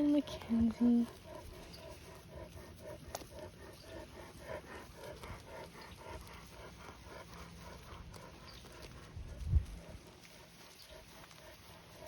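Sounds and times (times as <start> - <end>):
farm animals calling: 0.0 - 12.0.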